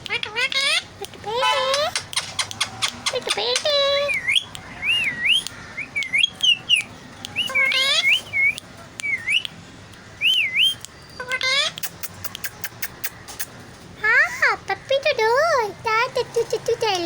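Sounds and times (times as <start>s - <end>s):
parakeet whistling: 1.3s - 9.5s, 10.2s - 13.2s
small sharp clicks: 11.7s - 13.6s.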